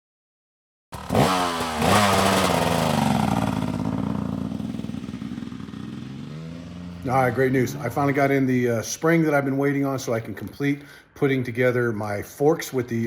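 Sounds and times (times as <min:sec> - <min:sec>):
dirt bike engine revving: 0:01.0 - 0:08.7.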